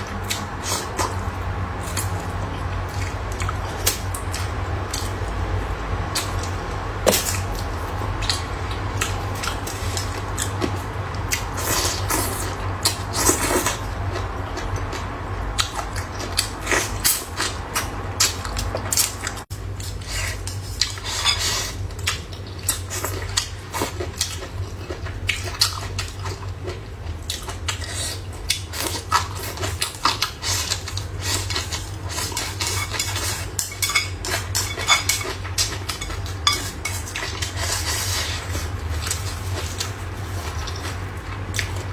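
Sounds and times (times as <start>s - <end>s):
utensils clinking on plates: 31.2s - 39.8s.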